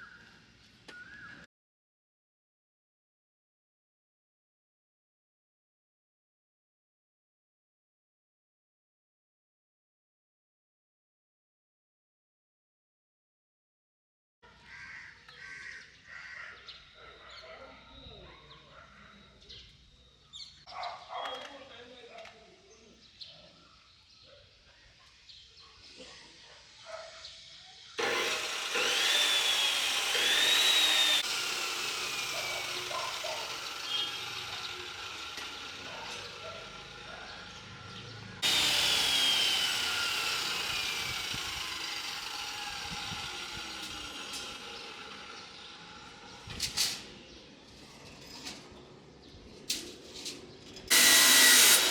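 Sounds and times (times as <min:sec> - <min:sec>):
high motor whine: 0:28.0 - 0:37.1, 0:38.2 - 0:46.7
power cutting tool hissing cut: 0:28.0 - 0:37.1, 0:38.4 - 0:47.1, 0:50.9 - 0:51.9.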